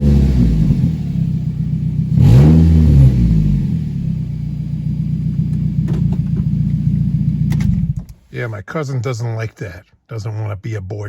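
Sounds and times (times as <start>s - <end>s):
car engine idling and revving: 0.0s - 8.3s.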